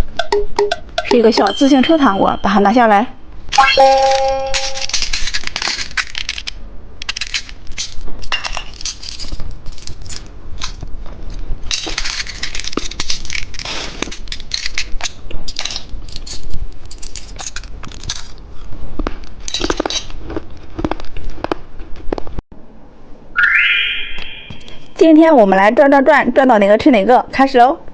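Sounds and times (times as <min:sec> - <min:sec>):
candy crunching: 0:03.7 - 0:22.3.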